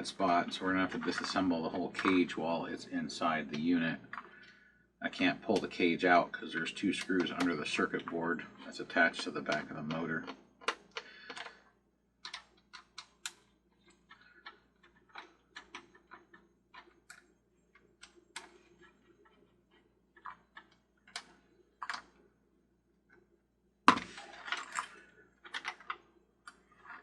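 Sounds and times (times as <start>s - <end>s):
clatter of parts: 23.9s - 27.0s.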